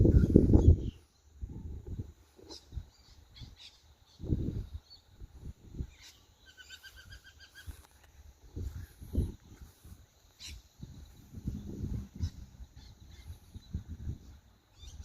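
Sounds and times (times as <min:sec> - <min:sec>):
bird chirping: 0:05.8 - 0:07.8, 0:10.3 - 0:15.0
low rumbling thumps: 0:10.8 - 0:14.3.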